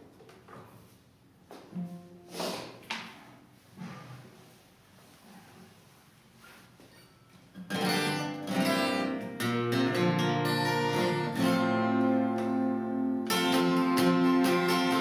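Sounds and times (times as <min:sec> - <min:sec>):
acoustic guitar strumming: 0:07.6 - 0:15.0.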